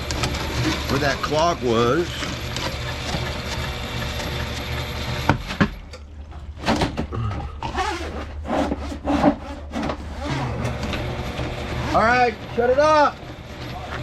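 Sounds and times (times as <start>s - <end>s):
drain cable rasping and scraping: 0.0s - 5.8s, 7.6s - 14.0s
machine low hum: 9.4s - 14.0s.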